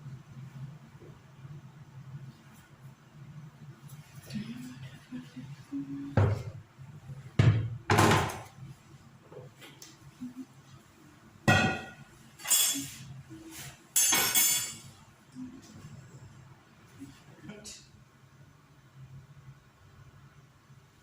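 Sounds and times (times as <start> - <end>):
kitchenware knocks and thumps: 6.2 - 6.6, 7.4 - 8.5, 11.5 - 12.0.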